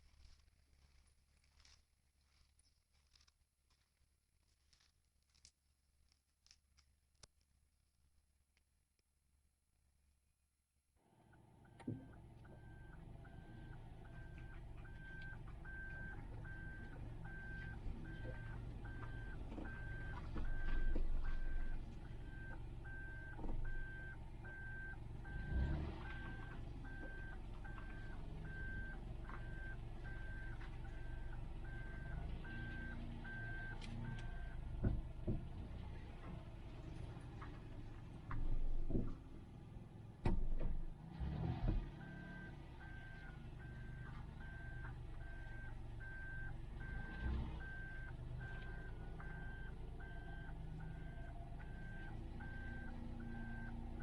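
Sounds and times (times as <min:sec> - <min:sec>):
low engine rumble: 0:11.0 - 0:54.0.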